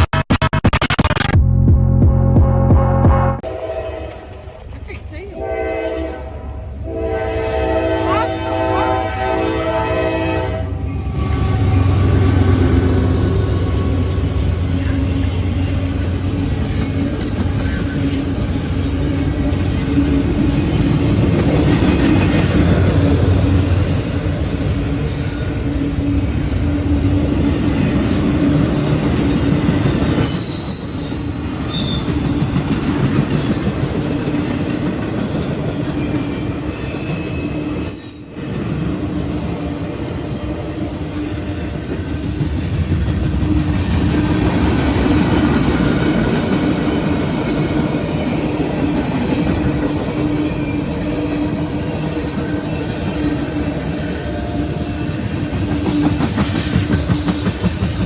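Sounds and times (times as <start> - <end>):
freight train wheels on rails: 3.4 - 58.0
high wheel squeals: 30.2 - 32.8, 35.4 - 38.4.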